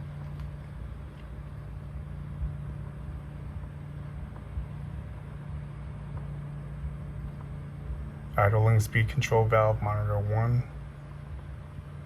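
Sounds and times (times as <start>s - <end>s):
faint rumble: 0.0s - 12.0s
steady low hum: 0.0s - 12.0s.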